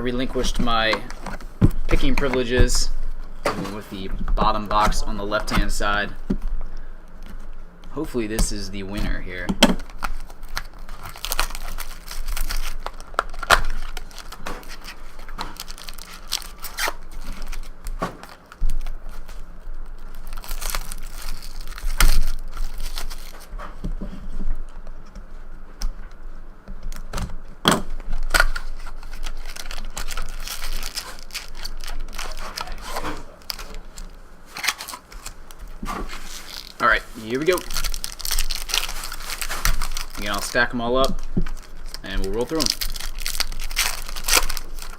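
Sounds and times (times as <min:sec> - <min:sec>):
card wrappers tearing and crinkling: 0:00.0 - 0:02.9, 0:08.4 - 0:23.6, 0:28.0 - 0:44.9.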